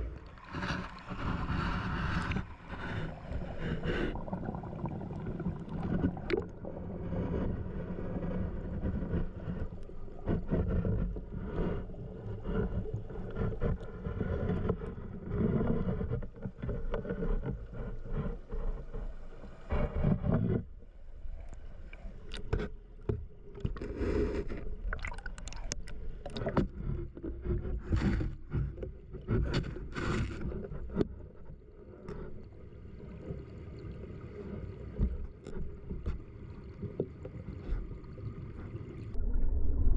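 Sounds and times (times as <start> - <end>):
water knocks and splashes: 0.0 - 7.6, 22.2 - 39.5.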